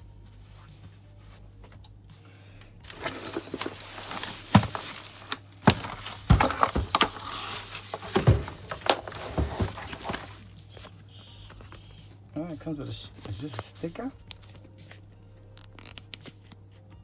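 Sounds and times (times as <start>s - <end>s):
packaging crinkling and rustling: 2.9s - 10.5s.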